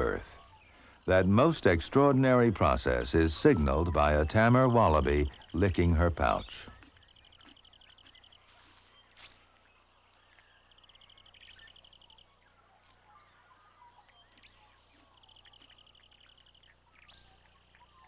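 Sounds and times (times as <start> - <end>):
faint chirps and clicks: 6.2 - 18.0.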